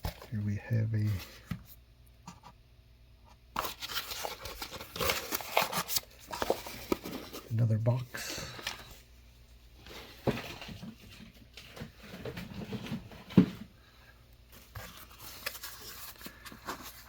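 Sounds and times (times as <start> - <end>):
cardboard box rustling and scraping: 3.6 - 7.5.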